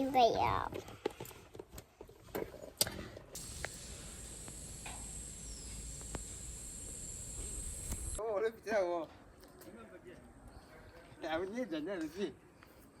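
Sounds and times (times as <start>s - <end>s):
faint clicks: 3.4s - 8.2s
high-pitched insect drone: 3.4s - 8.2s.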